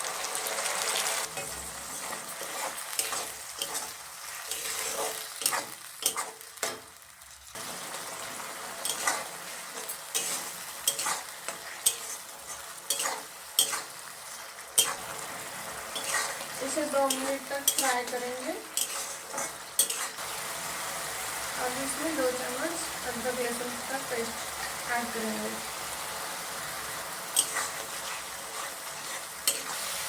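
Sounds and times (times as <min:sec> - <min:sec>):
onion paste sizzling in oil: 0:00.0 - 0:30.0
spatula scraping and knocking pan: 0:01.3 - 0:07.0, 0:08.8 - 0:15.2, 0:15.8 - 0:20.2, 0:27.3 - 0:30.0.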